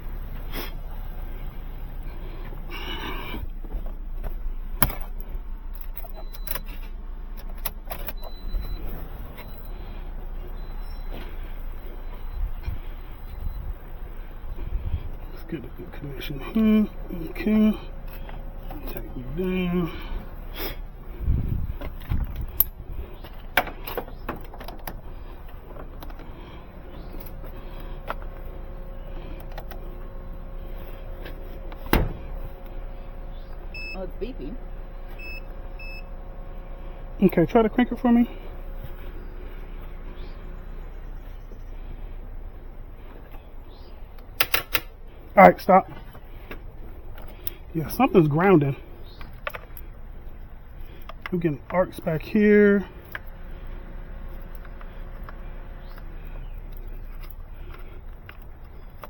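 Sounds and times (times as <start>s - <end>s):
steady background hum: 0.0s - 59.0s
low rumble: 8.2s - 37.2s.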